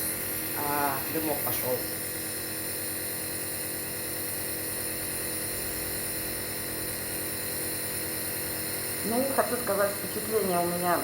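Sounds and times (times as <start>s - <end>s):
nebulizer motor hum and hiss: 0.0s - 11.0s.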